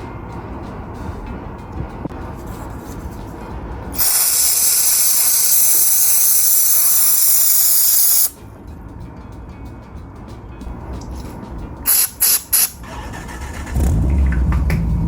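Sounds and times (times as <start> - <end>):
spray hissing: 4.0 - 8.4, 11.9 - 12.8.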